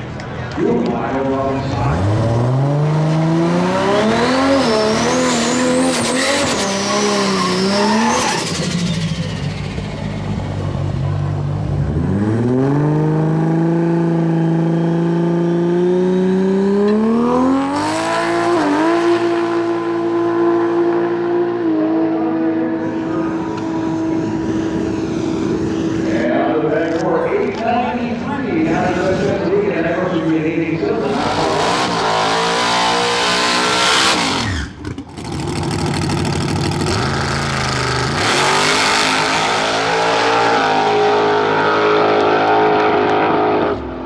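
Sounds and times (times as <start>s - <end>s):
drag race car engine revving: 0.6s - 26.3s, 28.6s - 44.0s
second engine pulling: 1.7s - 19.6s, 30.8s - 43.9s
rising whine: 21.6s - 26.3s.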